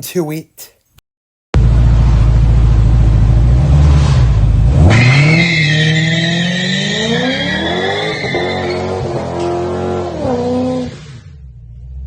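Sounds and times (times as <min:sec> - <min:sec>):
car engine revving: 0:01.6 - 0:12.0
high-pitched squeal: 0:03.9 - 0:09.4.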